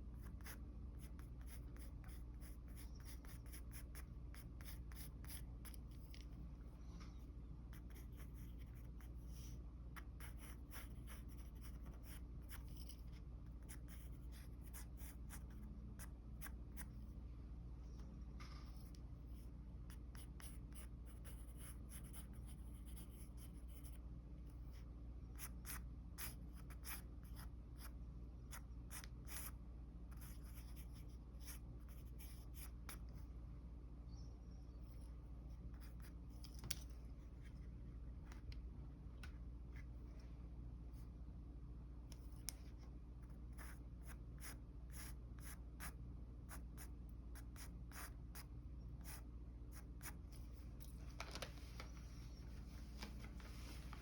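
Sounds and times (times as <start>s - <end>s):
pencil scratching on paper: 0.2s - 6.3s, 7.7s - 16.9s, 18.7s - 24.0s.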